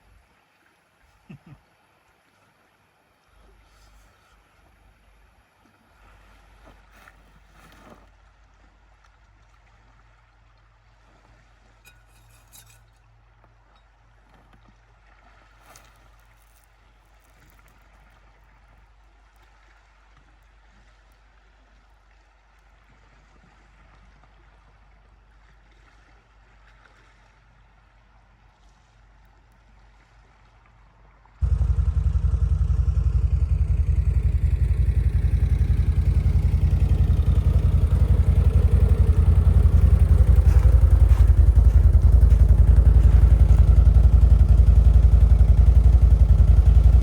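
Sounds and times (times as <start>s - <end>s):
vehicle engine rumbling: 31.4s - 47.0s.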